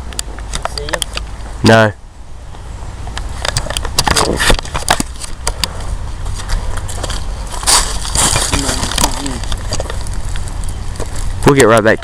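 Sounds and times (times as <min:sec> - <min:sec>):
steady low rumble: 0:00.0 - 0:12.0
footsteps crunching dry leaves: 0:05.1 - 0:11.5.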